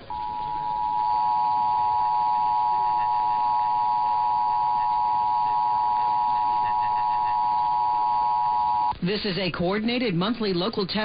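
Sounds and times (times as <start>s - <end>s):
loud dual tone alert signal: 0.0s - 8.9s.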